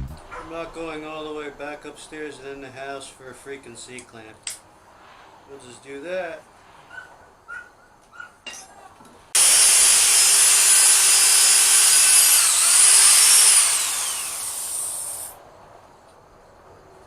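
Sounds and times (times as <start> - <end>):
electric drill boring into steel: 9.4 - 15.4.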